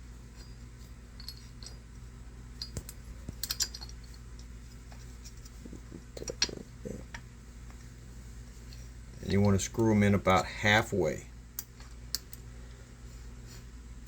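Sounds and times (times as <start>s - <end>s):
small screws clicking and scraping: 0.3s - 7.2s.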